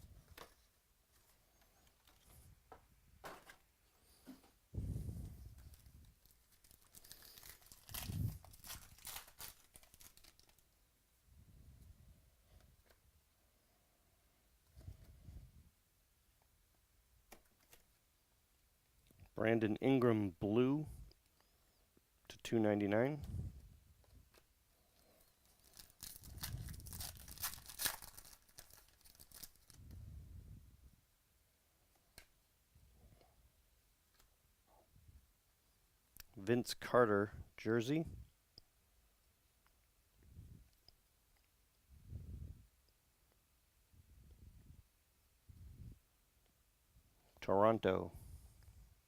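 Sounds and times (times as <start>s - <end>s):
foil wrapper tearing and crinkling: 5.7s - 10.6s, 25.5s - 29.8s.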